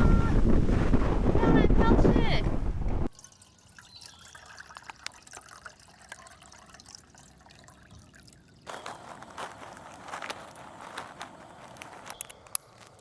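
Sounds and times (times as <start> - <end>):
water trickling and dripping: 3.1 - 13.0
loud crackling: 8.7 - 13.0
small clicks: 8.8 - 13.0.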